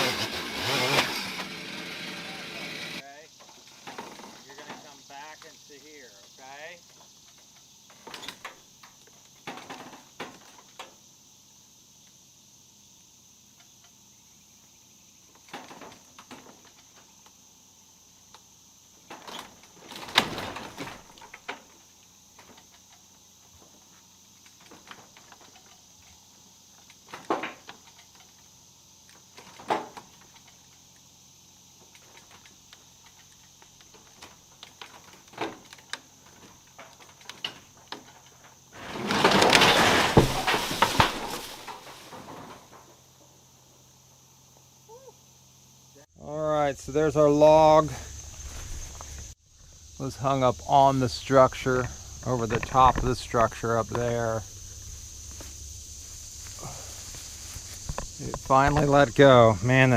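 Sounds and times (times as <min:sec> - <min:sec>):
faint high hiss: 0:03.0 - 0:08.9
creaks scrapes and knocks: 0:03.4 - 0:05.6, 0:06.8 - 0:10.9, 0:19.1 - 0:28.5, 0:31.8 - 0:43.0, 0:50.3 - 0:59.9.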